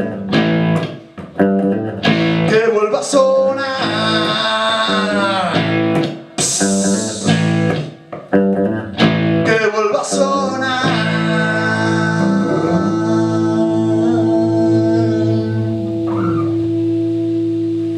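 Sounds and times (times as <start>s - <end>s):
ringing guitar chord: 11.3s - 17.9s.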